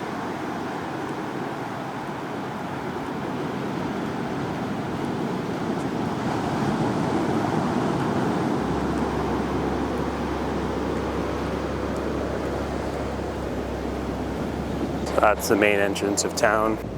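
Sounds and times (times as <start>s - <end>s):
waves breaking on a beach: 0.0s - 16.9s
low hum: 8.0s - 16.9s.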